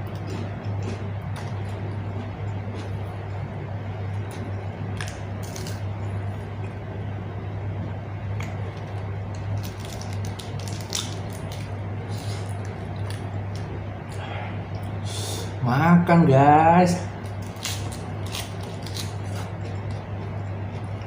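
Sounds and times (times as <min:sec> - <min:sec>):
person chewing: 0:00.0 - 0:03.4, 0:04.1 - 0:06.8, 0:08.4 - 0:15.1, 0:17.2 - 0:21.0
steady low hum: 0:00.0 - 0:21.0.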